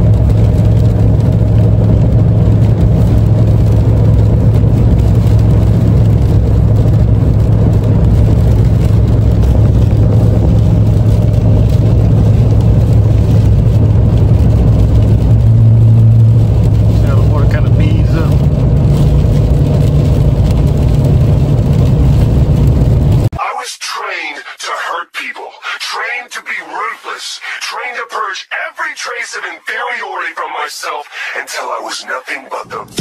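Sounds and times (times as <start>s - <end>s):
tyre noise on wet road: 0.0s - 23.3s
pickup engine drone: 0.0s - 23.4s, 26.7s - 33.0s.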